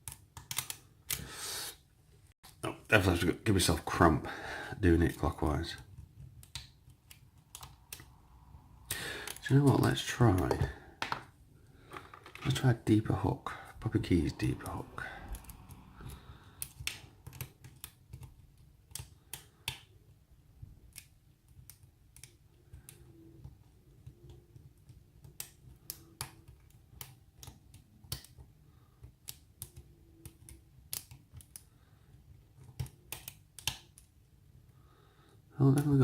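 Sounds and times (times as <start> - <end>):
small metallic clicks of lock pins: 0.0 - 1.2, 24.0 - 31.7.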